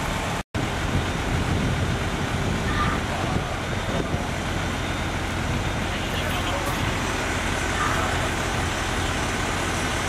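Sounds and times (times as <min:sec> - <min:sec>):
diesel engine running: 0:00.0 - 0:10.0
traffic noise: 0:00.0 - 0:10.0.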